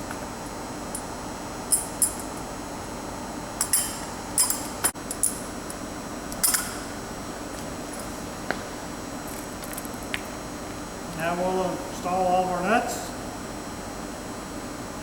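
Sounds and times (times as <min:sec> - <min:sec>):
steady background noise: 0:00.0 - 0:15.0
metal nuts and bolts clinking: 0:01.7 - 0:02.4, 0:03.6 - 0:05.4, 0:06.4 - 0:06.9.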